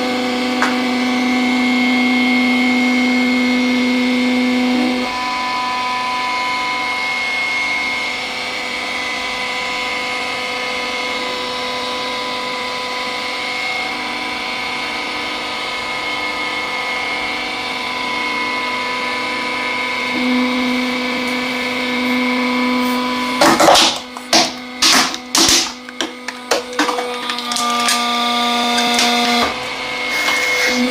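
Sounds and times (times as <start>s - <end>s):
hydraulic press pump humming: 16.7s - 30.9s
sharp cracks and crunches: 23.4s - 29.4s.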